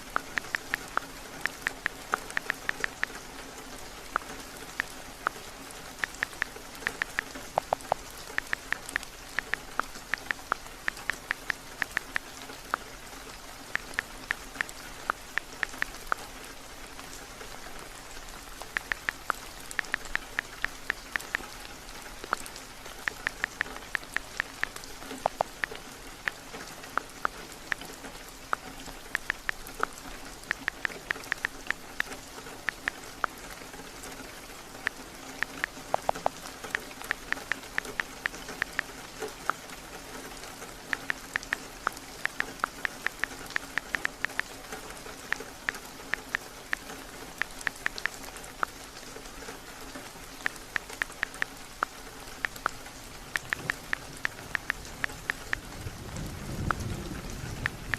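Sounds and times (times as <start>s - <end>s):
steady rain: 0.0s - 57.9s
phone keyboard typing taps: 0.1s - 3.1s, 6.0s - 12.8s, 13.8s - 16.2s, 18.7s - 21.4s, 23.1s - 25.7s, 28.5s - 29.9s, 30.5s - 33.3s, 35.4s - 39.6s, 41.0s - 44.5s, 47.4s - 48.7s, 53.4s - 55.6s.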